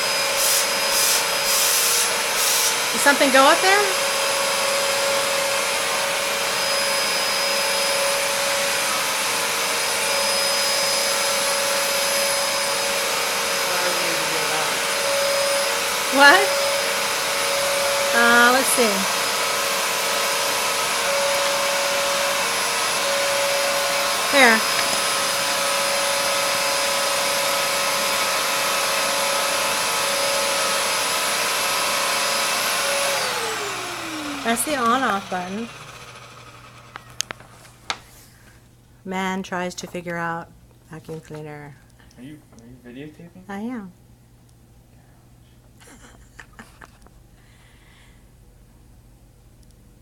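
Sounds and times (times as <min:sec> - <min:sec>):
upright vacuum cleaner running: 0:00.0 - 0:37.8.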